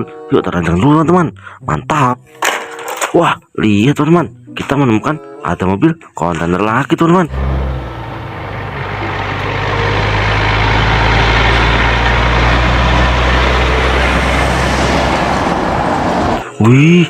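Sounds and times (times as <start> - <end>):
truck diesel engine humming: 7.3 - 16.5
road noise: 7.3 - 16.7.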